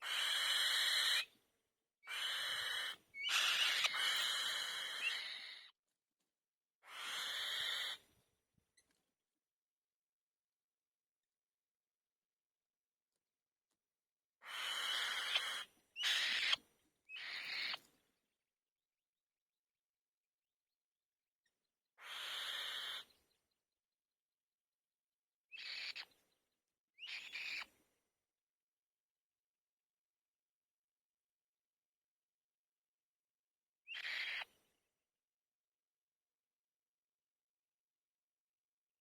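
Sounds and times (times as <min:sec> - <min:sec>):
young bird begging screeches: 0:00.0 - 0:01.2, 0:02.1 - 0:05.6, 0:06.9 - 0:08.0, 0:14.4 - 0:16.6, 0:22.0 - 0:23.0.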